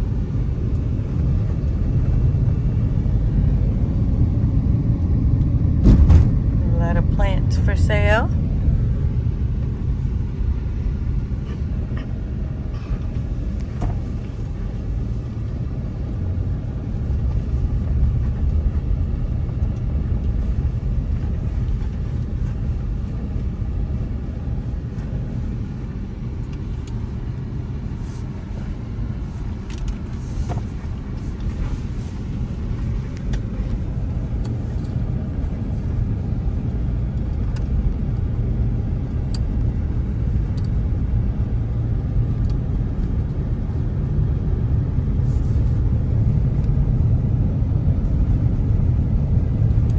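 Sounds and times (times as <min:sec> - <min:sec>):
car interior rumble: 0:00.0 - 0:49.9.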